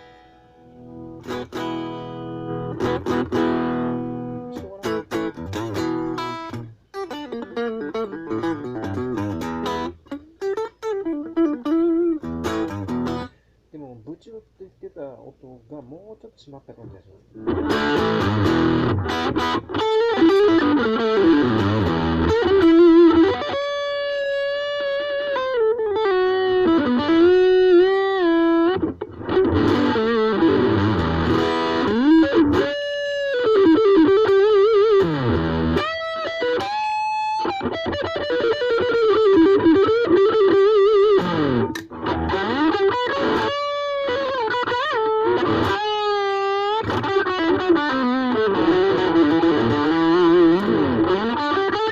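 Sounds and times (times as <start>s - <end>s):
distorted electric guitar lead: 0.8s - 13.3s, 17.4s - 51.9s.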